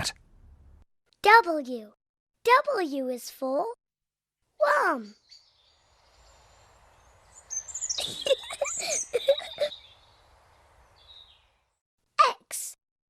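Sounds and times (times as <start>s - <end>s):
cartoon birds chirping: 4.6s - 11.5s.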